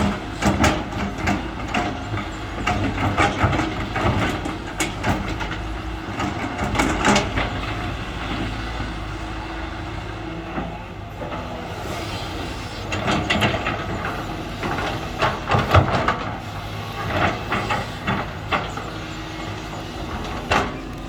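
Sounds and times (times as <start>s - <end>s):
diesel engine running: 0.0s - 21.0s
excavator clanks and knocks: 0.0s - 21.0s.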